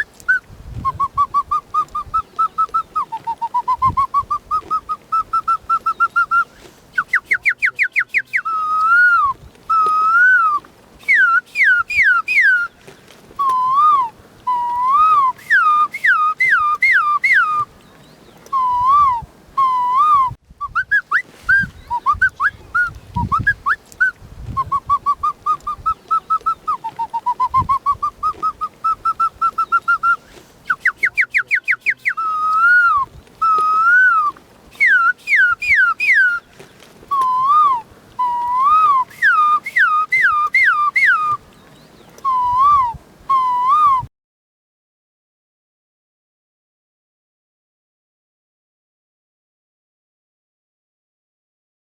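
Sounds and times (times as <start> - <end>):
boy whistling bird song: 0.0 - 12.7, 13.4 - 17.7, 18.4 - 36.5, 37.1 - 41.4, 42.2 - 44.1.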